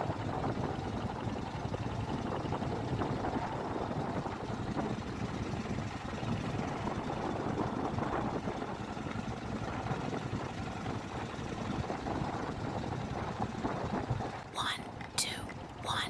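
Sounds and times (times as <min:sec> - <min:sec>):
small motorboat engine running: 0:00.0 - 0:15.8.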